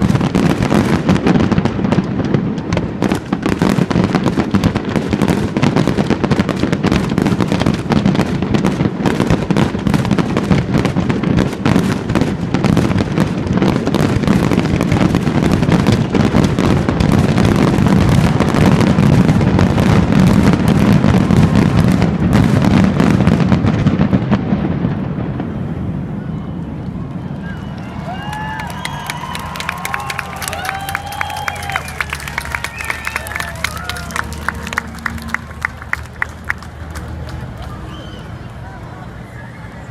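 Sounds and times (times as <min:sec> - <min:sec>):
fireworks bangs and crackles: 0:00.0 - 0:39.9.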